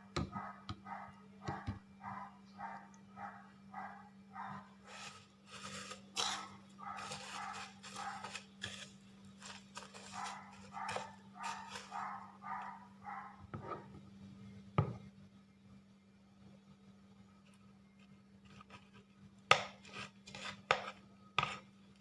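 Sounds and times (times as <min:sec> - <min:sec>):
dog barking: 0:00.3 - 0:04.7, 0:06.3 - 0:08.3, 0:10.0 - 0:13.4.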